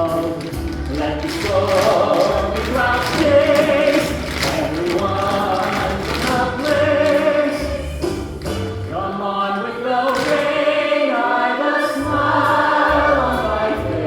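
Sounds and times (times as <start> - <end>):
instrumental accompaniment with bass: 0.0 - 9.2, 12.0 - 14.0
group of voices singing: 0.0 - 14.0.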